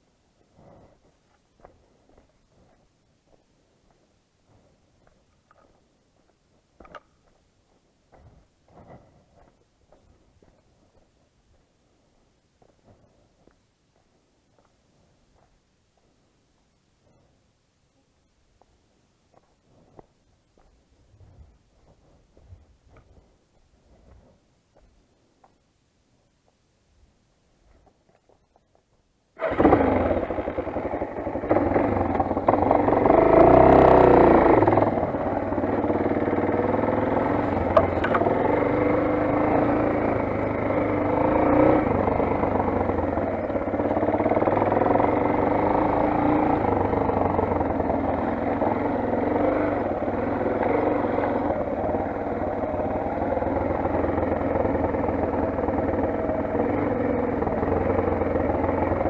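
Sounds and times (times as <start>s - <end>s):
motorcycle engine running: 29.4s - 59.0s.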